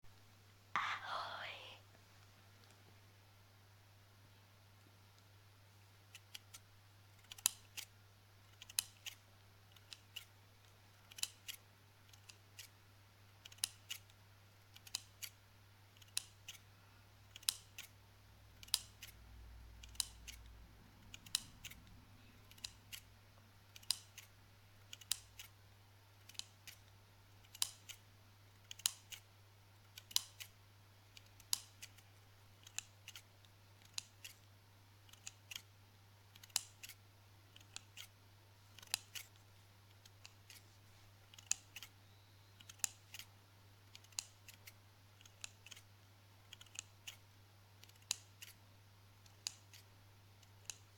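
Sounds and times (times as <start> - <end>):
scissors snipping: 7.2 - 7.9, 8.5 - 10.3, 11.0 - 12.7, 13.4 - 15.4, 16.0 - 16.6, 17.3 - 17.9, 18.6 - 19.2, 19.8 - 23.1, 26.2 - 28.0, 31.1 - 32.0, 35.1 - 35.7, 36.3 - 38.1, 38.7 - 39.4, 41.3 - 41.9, 43.9 - 45.8, 46.5 - 47.2, 47.8 - 48.6, 49.2 - 50.9.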